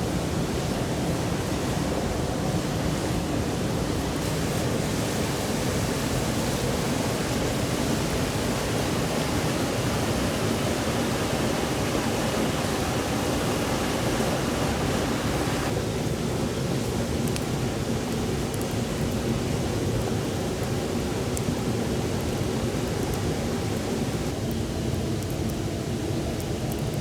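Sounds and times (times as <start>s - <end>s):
stream flowing over rocks: 4.2s - 15.8s.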